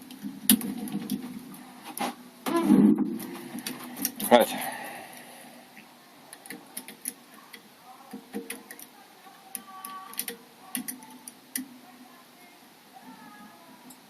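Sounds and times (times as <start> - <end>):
lock-picking tools clicking: 9.8 - 11.7.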